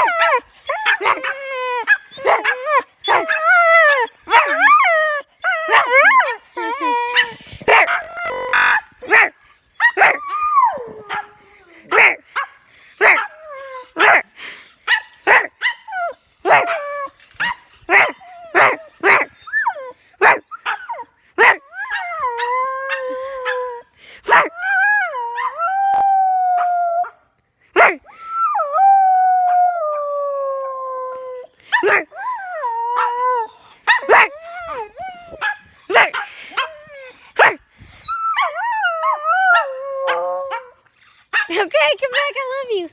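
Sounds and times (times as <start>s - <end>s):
dog howling: 0.0s - 12.2s, 15.3s - 27.2s, 27.8s - 40.8s
dog barking: 3.1s - 3.3s, 11.9s - 13.3s, 16.5s - 16.8s, 20.2s - 20.8s, 34.0s - 34.3s, 37.4s - 37.6s.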